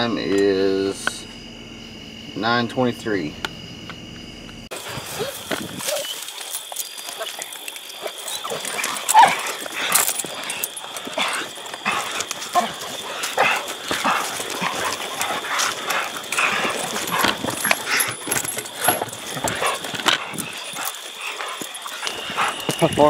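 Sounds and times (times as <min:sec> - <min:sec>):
dogs whining and barking: 0:04.7 - 0:23.0.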